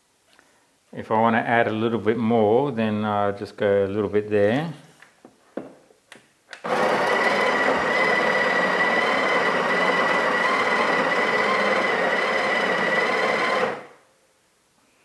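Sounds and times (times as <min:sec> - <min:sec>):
grinder whine: 0:06.6 - 0:14.0
coffee grinder grinding beans: 0:06.7 - 0:14.0.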